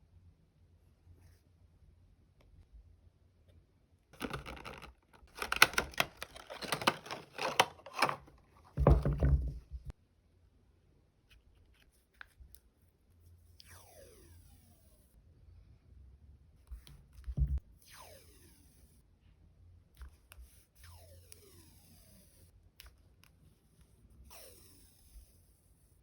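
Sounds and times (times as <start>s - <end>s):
plastic wrapping crinkling: 4.2s - 8.3s.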